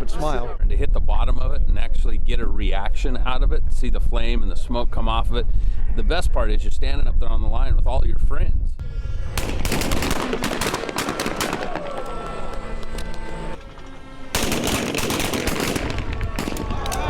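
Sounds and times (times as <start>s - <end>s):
rapid shotgun fire: 9.4s - 12.7s, 14.3s - 17.0s.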